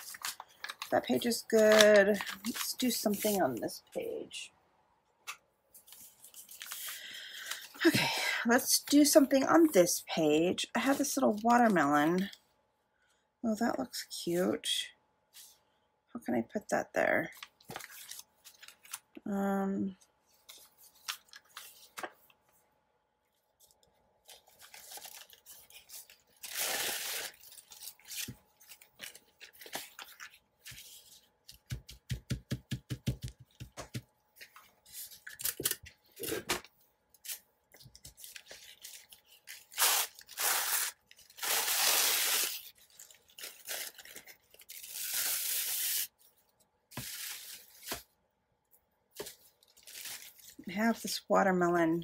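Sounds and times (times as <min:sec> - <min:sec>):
paper rustling and tearing: 0:00.0 - 0:03.6, 0:05.8 - 0:07.8, 0:17.4 - 0:19.1, 0:24.2 - 0:31.6, 0:37.2 - 0:46.3, 0:46.9 - 0:48.1.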